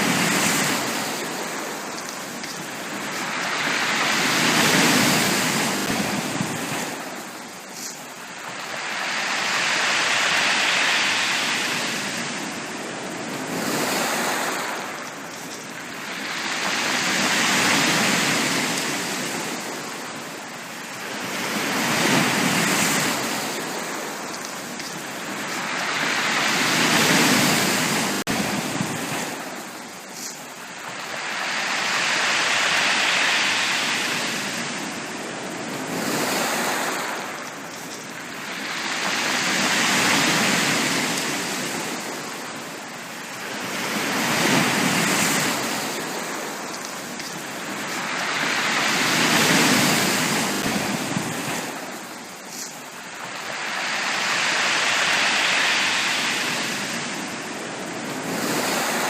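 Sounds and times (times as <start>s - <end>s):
sea waves breaking on a beach: 0.0s - 59.0s.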